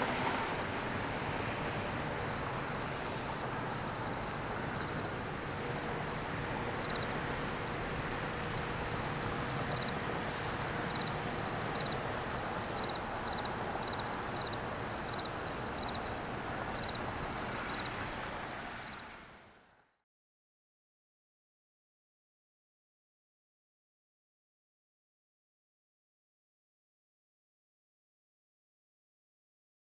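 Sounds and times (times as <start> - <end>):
steady hiss and low hum: 0.0 - 19.7
insects chirping: 0.3 - 19.5.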